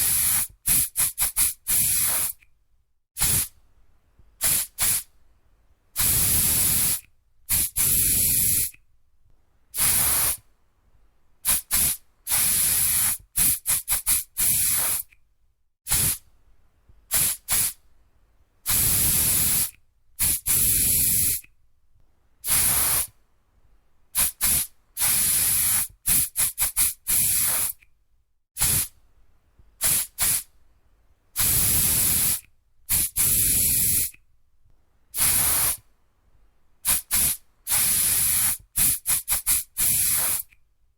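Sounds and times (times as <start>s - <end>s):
aerosol spray hissing: 0.0s - 2.4s, 3.2s - 3.5s, 4.4s - 5.1s, 6.0s - 8.7s, 9.8s - 10.4s, 11.4s - 15.1s, 15.9s - 16.2s, 17.1s - 17.8s, 18.7s - 21.4s, 22.4s - 23.1s, 24.2s - 27.8s, 28.6s - 28.9s, 29.8s - 30.5s, 31.4s - 34.1s, 35.2s - 35.8s, 36.8s - 40.5s.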